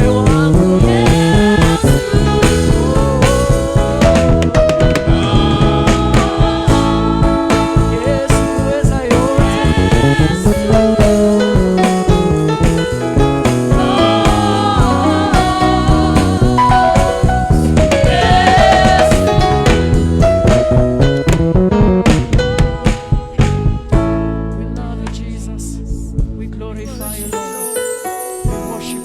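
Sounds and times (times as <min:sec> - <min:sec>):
person singing: 0:00.0 - 0:11.1, 0:24.6 - 0:29.0
worship band playing: 0:00.0 - 0:29.0.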